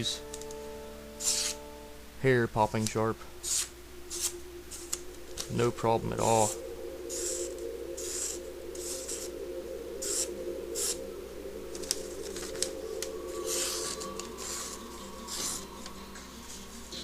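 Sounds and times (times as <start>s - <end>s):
background hum: 0.0s - 17.0s
knife slicing paper: 3.4s - 5.0s.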